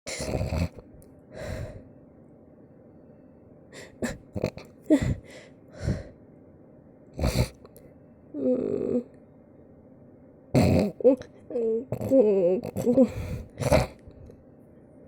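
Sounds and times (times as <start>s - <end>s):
cartoon snoring: 0.1s - 0.8s, 4.0s - 5.2s, 7.2s - 7.6s, 10.6s - 11.2s, 11.8s - 14.2s
short snorts: 7.2s - 7.6s, 10.6s - 11.0s, 12.0s - 14.0s.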